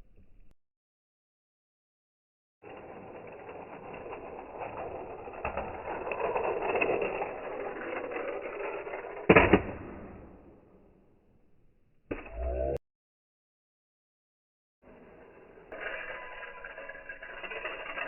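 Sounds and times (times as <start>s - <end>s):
toy cars rattling and clattering: 2.6s - 9.5s, 14.9s - 18.0s.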